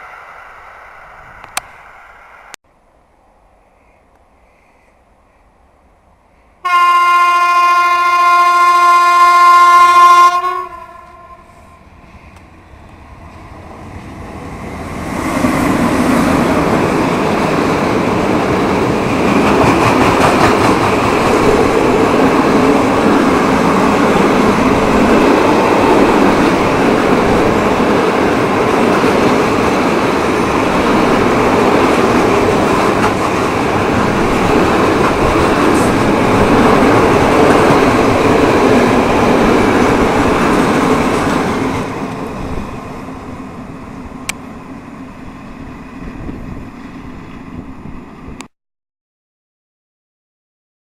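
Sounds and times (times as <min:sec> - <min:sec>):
train horn blast: 0:06.6 - 0:11.8
train wheels rumbling on rails: 0:10.6 - 0:48.5.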